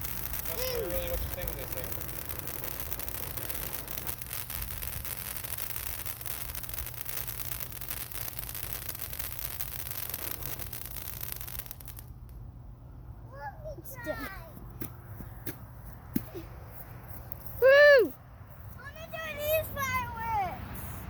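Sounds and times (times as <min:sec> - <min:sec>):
firework hissing and crackling: 0:00.0 - 0:12.5, 0:18.8 - 0:21.0.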